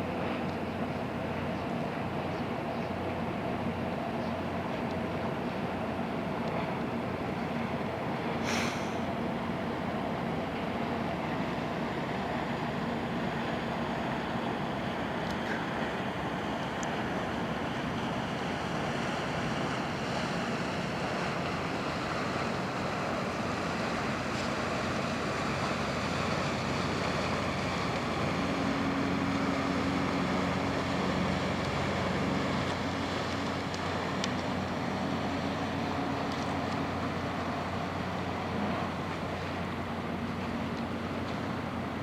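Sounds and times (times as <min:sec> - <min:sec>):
ship engines rumbling: 0:00.0 - 0:42.0.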